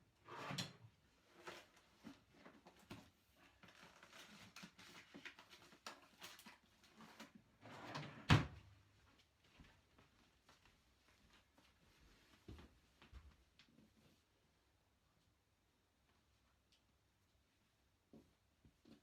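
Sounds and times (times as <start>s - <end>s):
rustling and sliding on floor: 8.9s - 15.4s.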